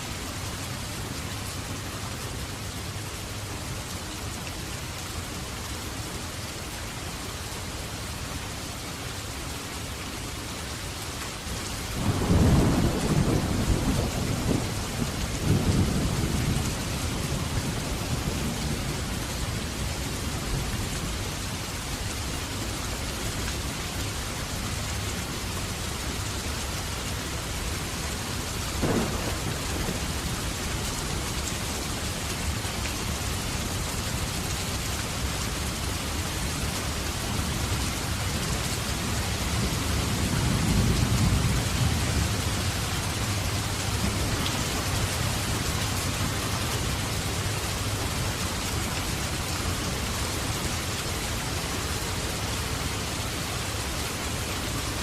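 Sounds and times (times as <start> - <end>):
heavy rain: 0.0 - 55.0
thunder rumbling: 12.0 - 19.7, 28.8 - 32.6
sharp thunder crack: 28.8 - 30.4.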